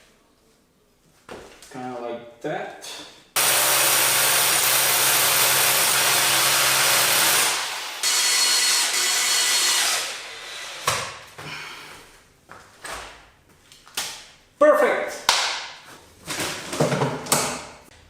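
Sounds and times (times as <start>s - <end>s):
power drill running: 3.4s - 10.9s.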